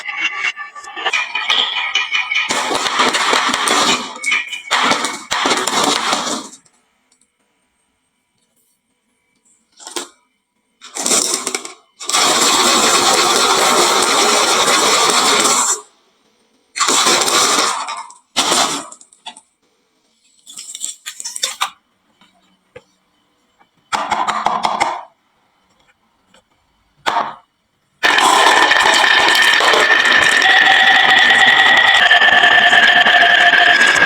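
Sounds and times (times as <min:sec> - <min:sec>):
marbles clattering down wooden run: 0:00.0 - 0:06.3, 0:28.0 - 0:34.0.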